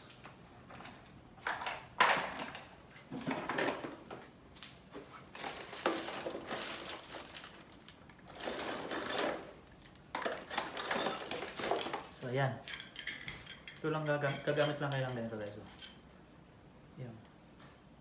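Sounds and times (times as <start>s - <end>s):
metal tools clinking and rattling: 0.7s - 2.7s, 8.3s - 16.0s.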